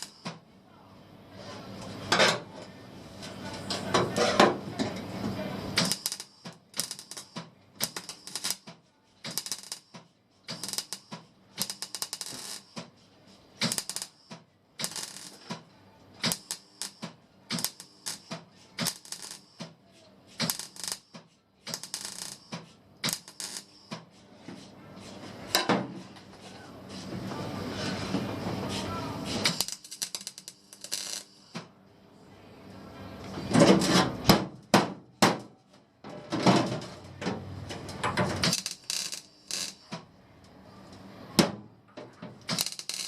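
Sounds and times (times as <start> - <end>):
welding arc crackling: 0.0 - 0.3, 5.8 - 12.9, 13.6 - 15.6, 16.2 - 19.7, 20.4 - 24.0, 29.1 - 31.5, 38.4 - 40.0, 42.5 - 43.0.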